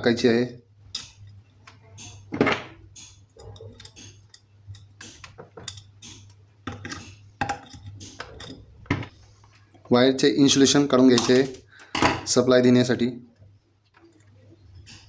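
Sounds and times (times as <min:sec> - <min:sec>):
small metal hardware clinking: 0:02.0 - 0:08.6.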